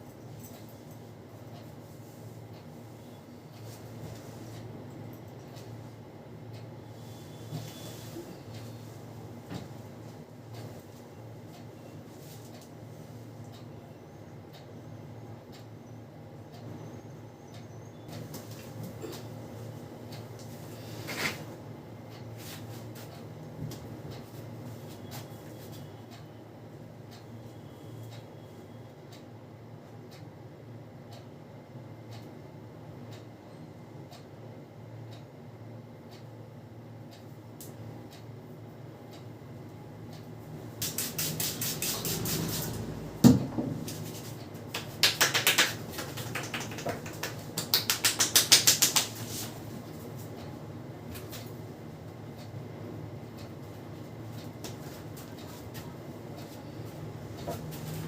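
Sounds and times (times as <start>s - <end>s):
steady low hum: 0.0s - 58.0s
hands rubbing and tapping skin: 40.8s - 42.4s, 43.9s - 49.5s.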